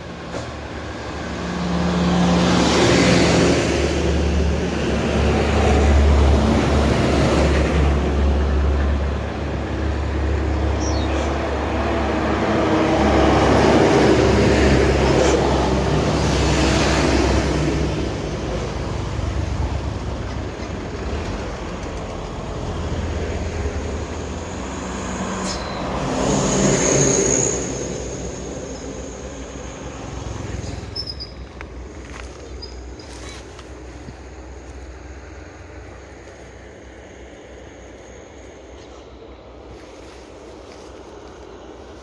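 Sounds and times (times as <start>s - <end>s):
bus diesel engines labouring: 0.0s - 42.0s
thin high squeal: 30.9s - 31.4s.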